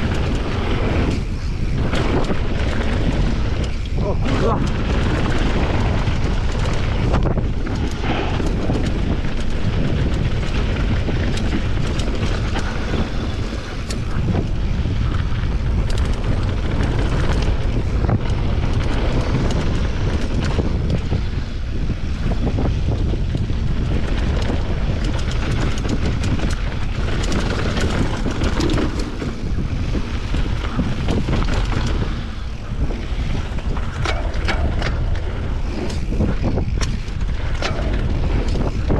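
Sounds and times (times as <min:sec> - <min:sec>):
mountain bike rumble and clatter: 0:00.0 - 0:38.9
wind buffeting microphone: 0:00.0 - 0:38.9.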